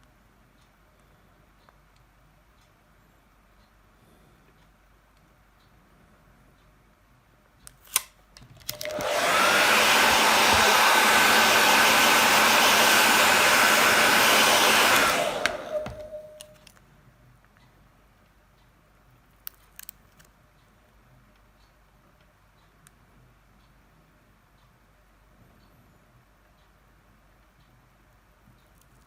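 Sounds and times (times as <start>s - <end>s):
electric blower whining: 8.7s - 16.4s
blower switch click: 8.7s - 16.7s.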